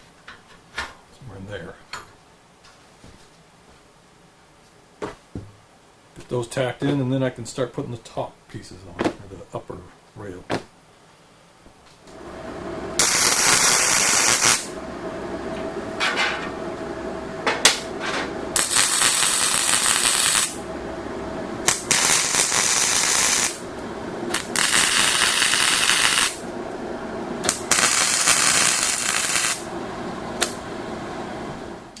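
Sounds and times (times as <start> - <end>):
steady hum: 10.2 - 32.0
welding arc crackle: 13.0 - 14.8, 18.6 - 20.7, 21.6 - 26.5, 27.4 - 29.7, 30.4 - 30.7.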